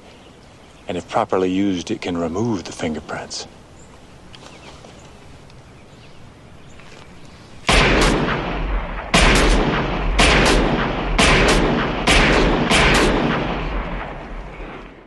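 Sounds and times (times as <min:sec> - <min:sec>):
gunshots with echo: 0:07.7 - 0:15.0.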